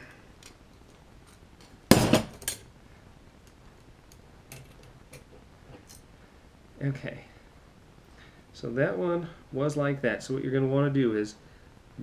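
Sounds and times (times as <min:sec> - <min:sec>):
metal lock parts clattering: 0:01.2 - 0:02.7, 0:04.5 - 0:06.1.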